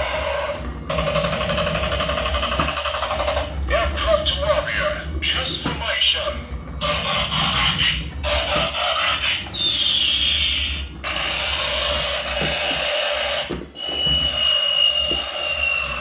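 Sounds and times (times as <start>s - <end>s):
high-pitched electronic toy tones: 9.5s - 16.0s.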